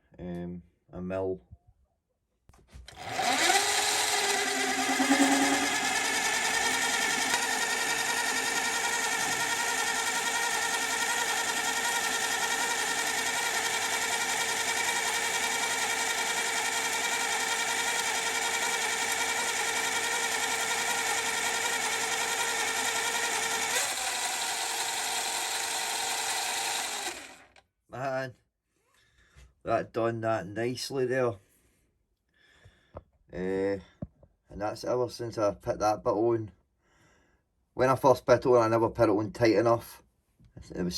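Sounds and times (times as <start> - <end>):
lathe motor whine: 2.9 - 27.6.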